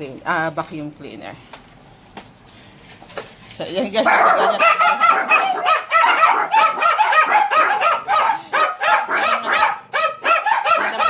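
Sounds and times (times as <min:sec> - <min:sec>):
dogs barking rapidly: 0:04.0 - 0:11.0.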